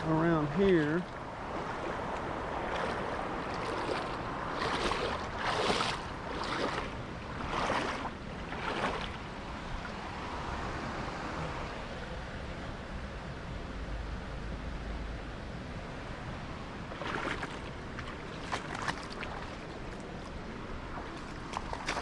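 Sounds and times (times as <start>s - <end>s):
water running over spillway: 0.0s - 10.1s, 16.5s - 22.0s
swishing footsteps: 1.6s - 9.2s.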